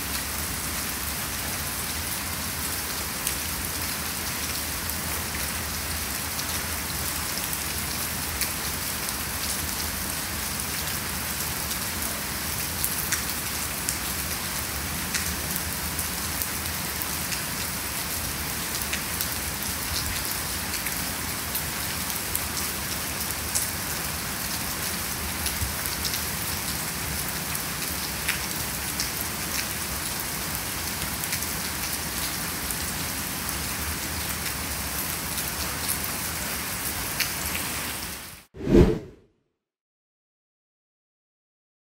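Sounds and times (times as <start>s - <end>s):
raindrops ticking on a surface: 4.3s - 36.2s, 37.0s - 37.7s.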